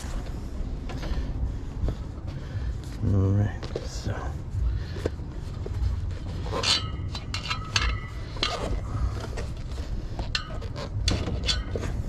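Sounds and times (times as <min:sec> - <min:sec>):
metal tools clinking: 0:06.4 - 0:08.9, 0:10.2 - 0:12.0.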